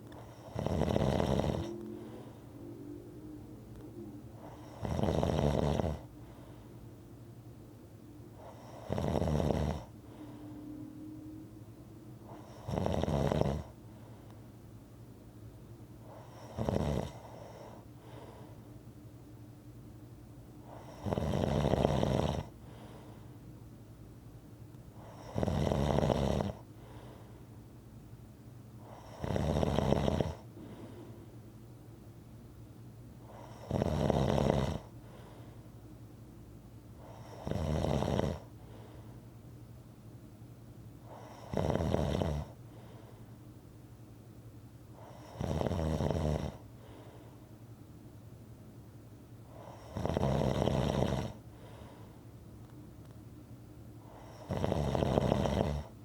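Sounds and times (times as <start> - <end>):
faint steady hum: 0.0 - 56.0
person snoring: 0.1 - 2.5, 4.4 - 6.5, 8.4 - 9.9, 12.3 - 13.7, 20.7 - 22.6, 28.9 - 30.8, 33.3 - 34.9, 37.0 - 38.5, 41.1 - 42.6, 49.6 - 51.4, 54.1 - 55.9.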